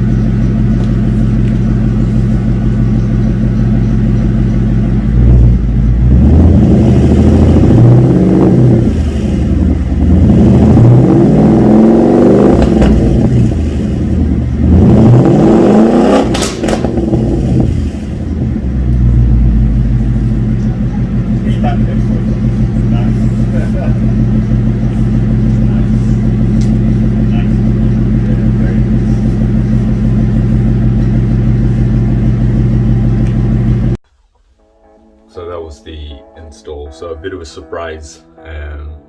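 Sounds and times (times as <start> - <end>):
car engine idling and revving: 0.0 - 34.0
exhaust crack: 0.0 - 34.6.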